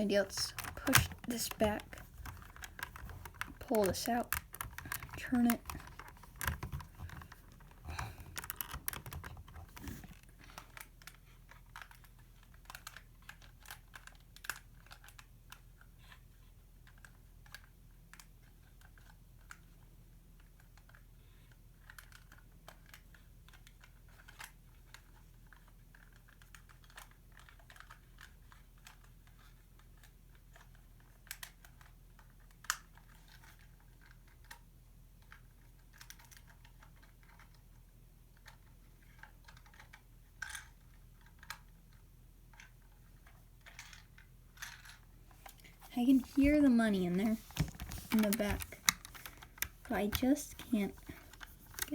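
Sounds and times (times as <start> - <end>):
plastic bricks clicking and rattling: 0.0 - 15.3, 42.5 - 51.9.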